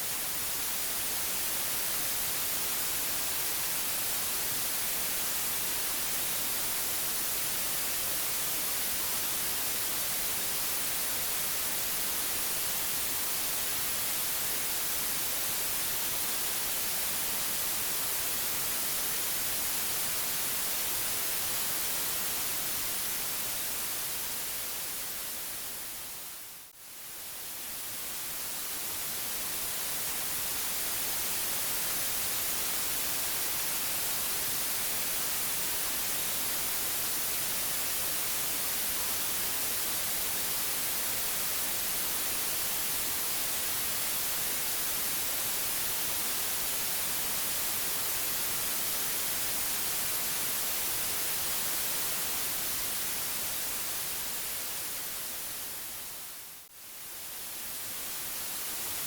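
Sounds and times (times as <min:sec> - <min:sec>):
white noise hiss: 0:00.0 - 0:59.0.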